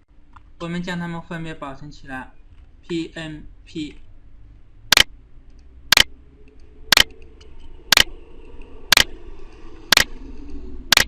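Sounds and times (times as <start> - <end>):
faint low hum: 0.0 - 11.0
sharp ticks: 4.9 - 8.1, 8.9 - 9.1, 9.9 - 10.1.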